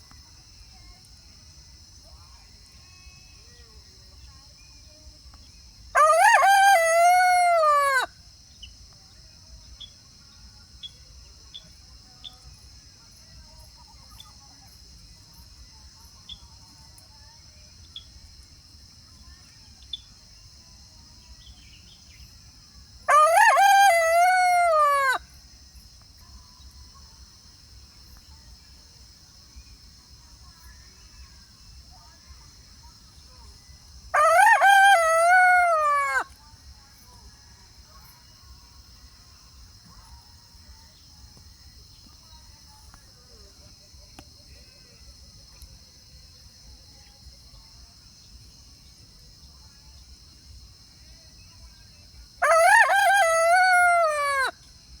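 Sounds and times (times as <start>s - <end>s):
rooster crowing: 6.0s - 8.1s, 23.1s - 25.2s, 34.1s - 36.4s, 52.4s - 54.6s.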